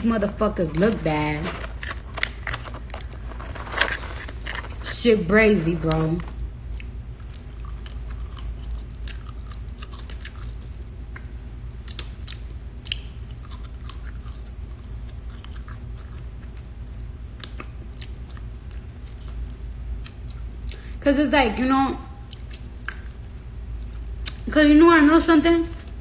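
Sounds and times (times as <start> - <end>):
steady low hum: 0.0 - 26.0
person chewing: 6.3 - 10.8, 11.8 - 20.9, 22.3 - 24.4.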